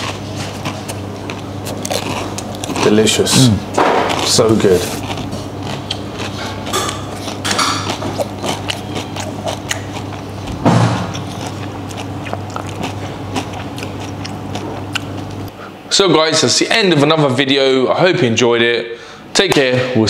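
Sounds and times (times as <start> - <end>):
crunching crispy food: 0.0 - 10.5, 11.1 - 15.5
steady low hum: 0.0 - 20.0.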